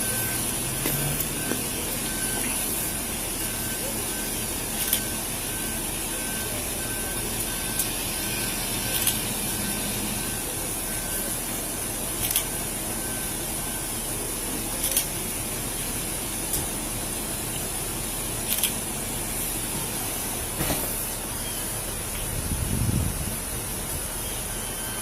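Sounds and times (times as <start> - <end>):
faint electronic beep: 0.0 - 15.0, 20.0 - 22.0, 24.0 - 25.0.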